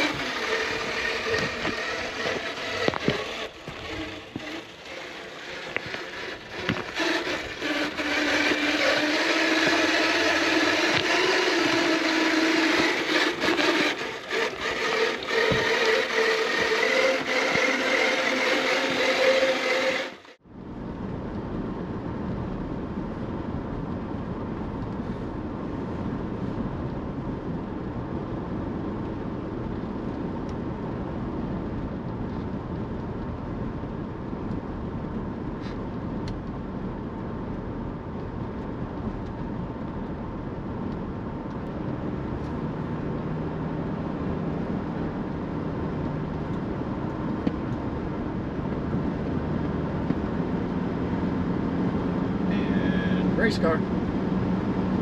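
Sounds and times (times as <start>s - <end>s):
electric motor and gears whining: 0.0s - 20.4s, 38.2s - 55.0s
tyres scraping on rock: 0.0s - 20.4s
car road rumble: 20.4s - 55.0s.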